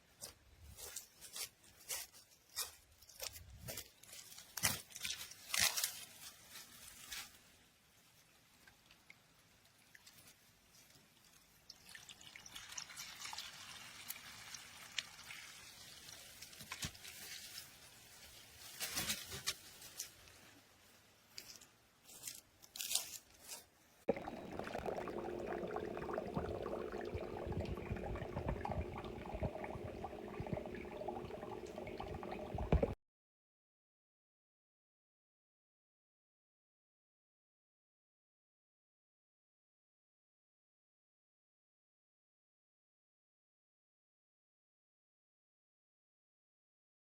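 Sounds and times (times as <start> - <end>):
water trickling and splashing: 9.7 - 16.8, 24.1 - 33.0
fountain pump gurgling water: 24.1 - 33.0
pump clicks: 24.1 - 33.0.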